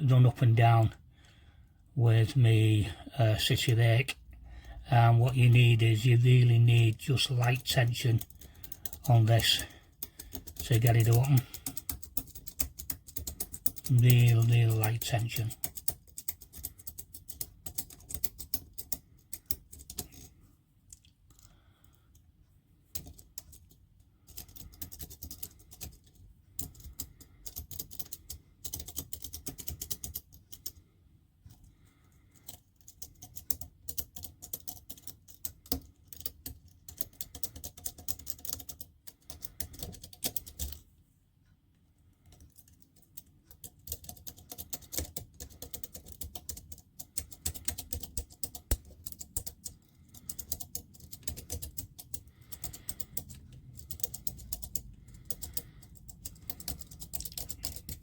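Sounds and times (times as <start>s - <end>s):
lock pick clicking and scraping: 42.3s - 58.0s.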